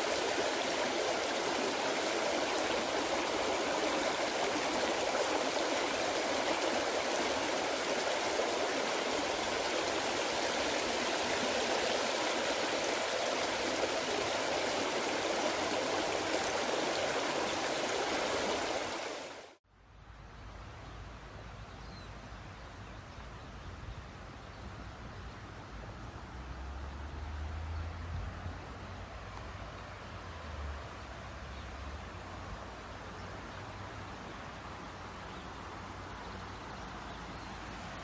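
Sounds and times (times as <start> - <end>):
stream water rushing: 0.0 - 19.6.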